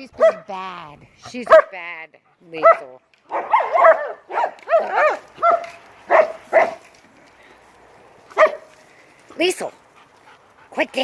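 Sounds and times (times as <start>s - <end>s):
dog whining yelps and barks: 3.3s - 6.8s.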